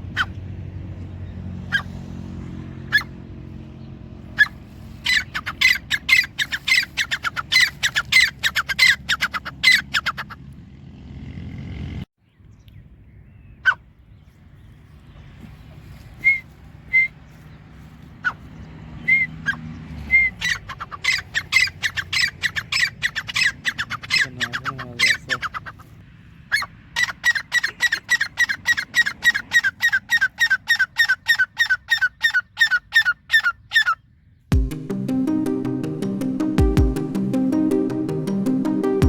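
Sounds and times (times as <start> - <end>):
bird shrill repeated calls: 0.0 - 0.4, 1.6 - 2.0, 2.8 - 3.3, 4.2 - 10.5, 18.2 - 34.1.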